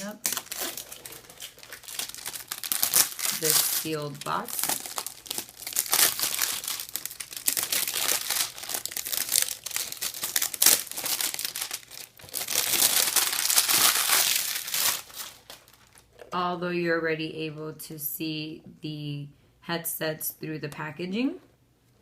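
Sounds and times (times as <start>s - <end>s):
packaging crinkling and tearing: 0.0s - 16.3s.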